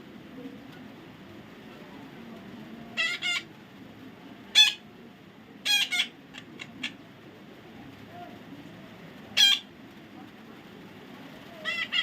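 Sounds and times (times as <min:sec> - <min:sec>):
parrot chirps: 0:03.0 - 0:03.5, 0:04.5 - 0:04.8, 0:05.6 - 0:07.0, 0:09.4 - 0:09.7, 0:11.6 - 0:12.0
parrot squawking: 0:03.0 - 0:03.5, 0:04.5 - 0:04.8, 0:05.6 - 0:07.0, 0:09.4 - 0:09.7, 0:11.6 - 0:12.0.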